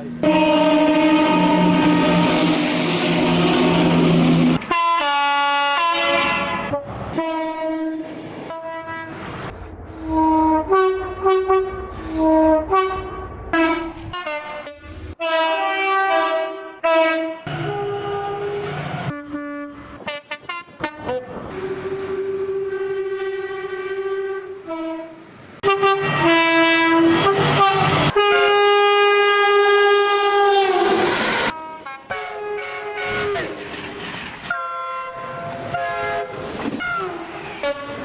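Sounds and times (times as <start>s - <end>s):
passing train rumble: 0.0s - 38.0s
two-tone train horn blasts: 0.2s - 9.3s, 10.0s - 33.7s, 34.5s - 38.0s.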